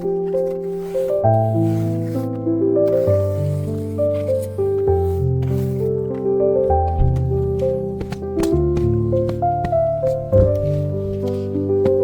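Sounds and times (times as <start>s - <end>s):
calm instrumental music: 0.0s - 12.0s.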